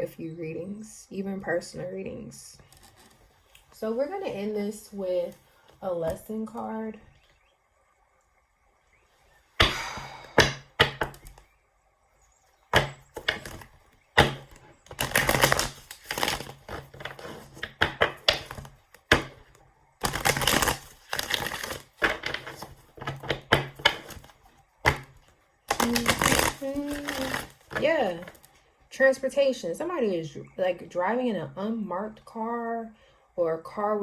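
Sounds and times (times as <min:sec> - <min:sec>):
cards being shuffled: 0:12.8 - 0:28.5.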